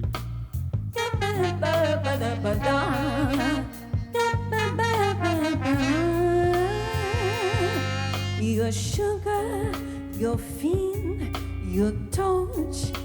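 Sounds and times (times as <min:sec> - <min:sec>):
bass and drums: 0:00.0 - 0:13.0
melodic lead line with vibrato: 0:01.3 - 0:08.7.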